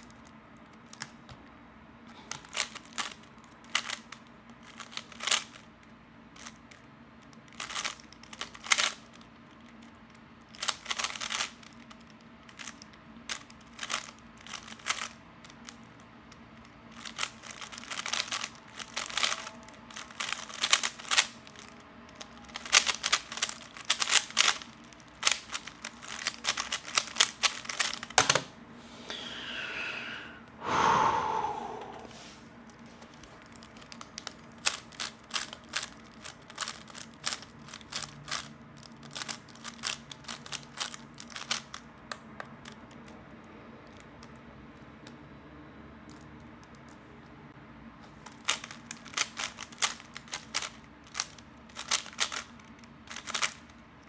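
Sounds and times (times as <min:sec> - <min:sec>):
puzzle cube plastic clicks: 0:02.3 - 0:05.7, 0:06.4 - 0:28.5, 0:32.7 - 0:43.2, 0:46.1 - 0:47.0, 0:48.2 - 0:53.8.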